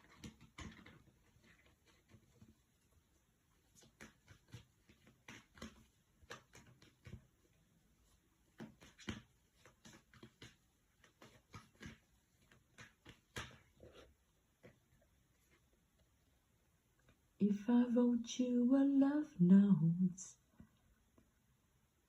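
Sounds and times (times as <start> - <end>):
faint clicks and taps: 0.0 - 16.2.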